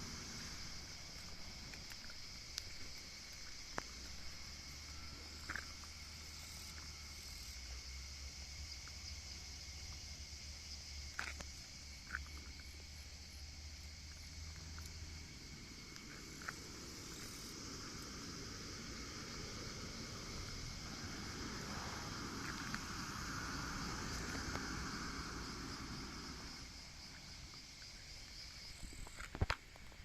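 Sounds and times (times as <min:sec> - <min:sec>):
high insect drone: 0:00.0 - 0:30.0
low rumble: 0:14.0 - 0:27.8.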